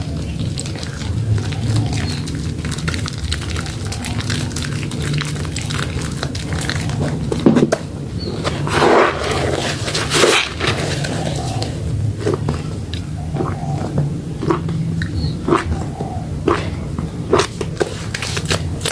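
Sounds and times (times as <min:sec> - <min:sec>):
soap lathering with wet squelches: 0:00.0 - 0:07.7.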